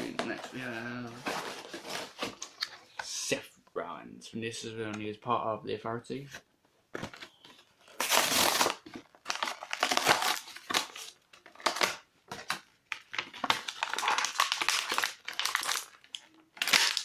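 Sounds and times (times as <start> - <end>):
plastic packaging crinkling: 7.2 - 17.0.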